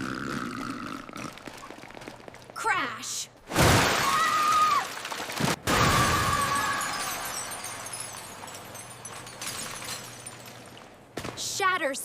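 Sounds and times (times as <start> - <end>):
cartoon glass shattering: 3.5 - 10.6
ringing glass shards: 6.4 - 10.9.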